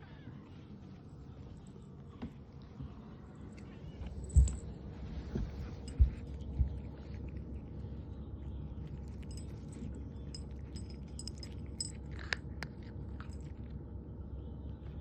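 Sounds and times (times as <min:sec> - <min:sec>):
steady low hum: 0:00.0 - 0:15.0
light metallic tinkling: 0:03.6 - 0:05.0, 0:08.8 - 0:12.4.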